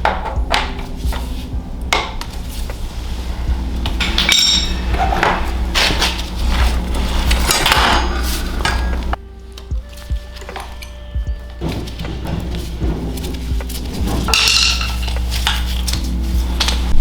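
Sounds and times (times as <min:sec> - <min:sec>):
metal parts clanking: 0:00.0 - 0:17.0
steady low hum: 0:00.0 - 0:17.0
metallic ring: 0:03.3 - 0:09.2, 0:10.4 - 0:17.0.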